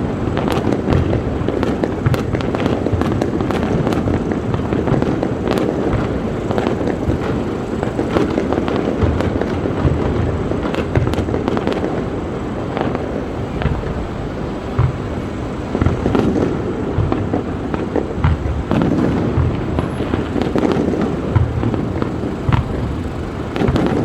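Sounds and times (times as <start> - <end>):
fireworks booms and crackling: 0.0 - 24.0.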